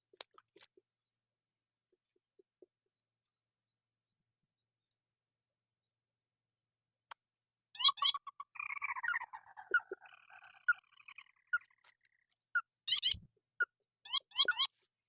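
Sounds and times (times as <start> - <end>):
bird calling: 7.8 - 13.3, 14.1 - 14.7.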